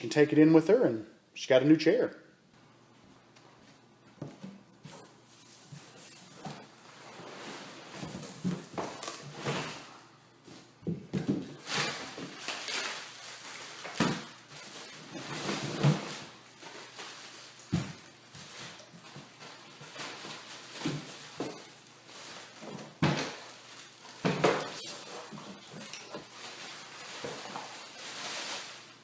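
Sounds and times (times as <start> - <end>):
knocks and thuds of objects handled: 10.4 - 12.4, 17.7 - 18.5, 22.6 - 23.5, 24.2 - 26.3.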